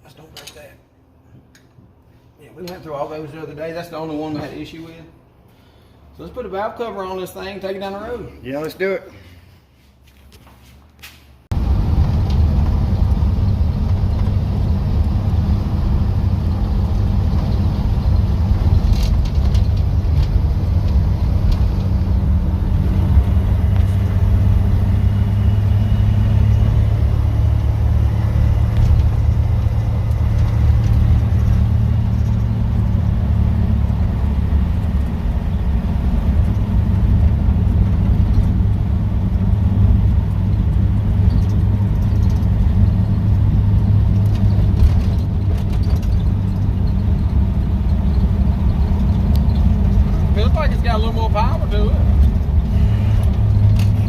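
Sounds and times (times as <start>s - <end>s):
car engine rumbling: 11.4s - 54.0s.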